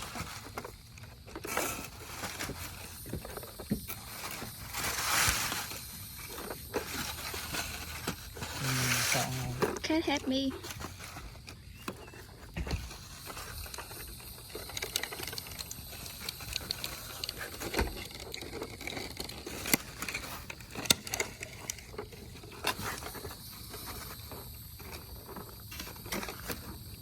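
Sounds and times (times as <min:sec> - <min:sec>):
rustling: 0:00.0 - 0:27.0.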